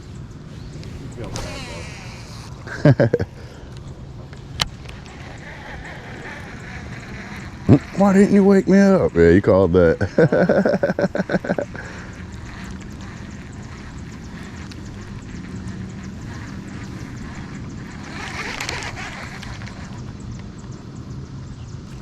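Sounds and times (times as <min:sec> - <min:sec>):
boat motor running: 0:00.8 - 0:20.2
man laughing: 0:02.6 - 0:03.6, 0:09.8 - 0:12.1.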